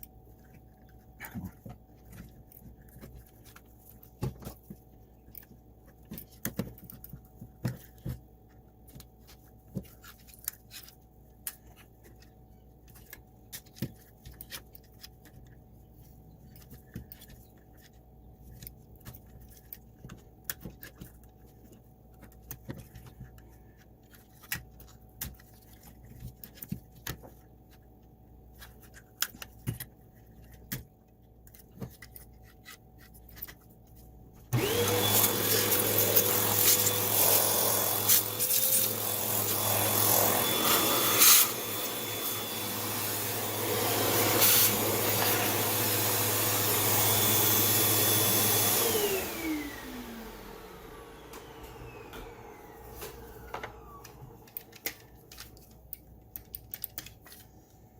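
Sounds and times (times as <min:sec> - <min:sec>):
plastic parts clicking and tapping: 0:01.6 - 0:15.6, 0:16.4 - 0:34.1, 0:53.5 - 0:57.5.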